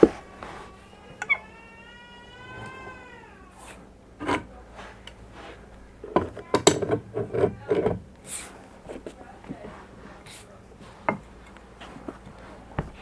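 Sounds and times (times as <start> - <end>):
pitched squeal: 0.0 - 3.8
tools clanking on radiator pipe: 6.0 - 9.7.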